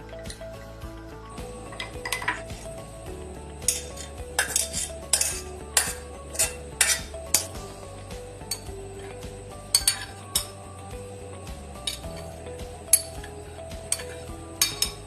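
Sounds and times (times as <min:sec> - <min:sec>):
utensil clinking against cookware: 0:01.7 - 0:02.6, 0:03.7 - 0:07.6, 0:09.7 - 0:10.6, 0:12.9 - 0:15.0.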